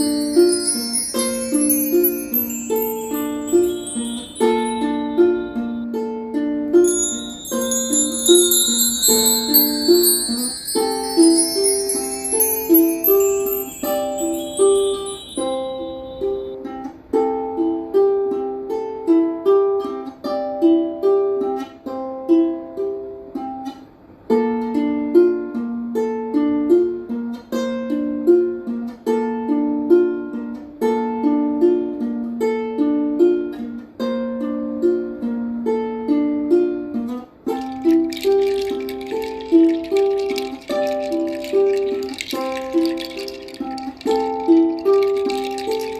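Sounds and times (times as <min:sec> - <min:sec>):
plucked string instrument melody: 0:00.0 - 0:45.9.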